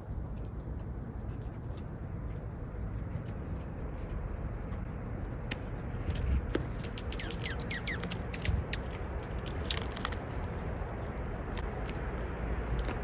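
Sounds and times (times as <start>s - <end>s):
birds chirping and ticking: 5.0s - 13.0s.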